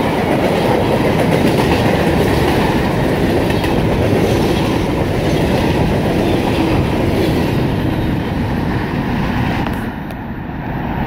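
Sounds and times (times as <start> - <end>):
wheels clacking over rail joints: 0.0 - 8.9
freight train rolling past: 0.0 - 11.0.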